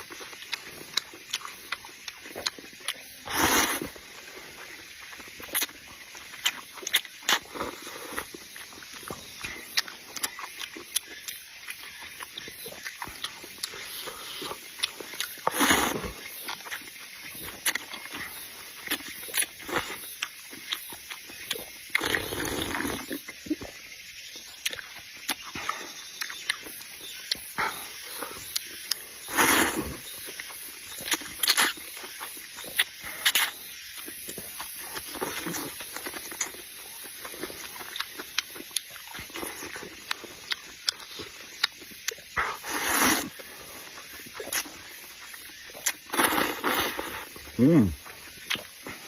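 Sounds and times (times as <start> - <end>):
chewing with sharp clicks: 0.0 - 3.2, 5.0 - 23.8, 24.4 - 29.1, 30.0 - 42.6, 43.2 - 46.8, 48.0 - 49.0
slurping noodles: 3.2 - 4.0, 15.2 - 16.2, 21.9 - 23.2, 29.2 - 30.1, 42.4 - 43.5, 45.8 - 48.0.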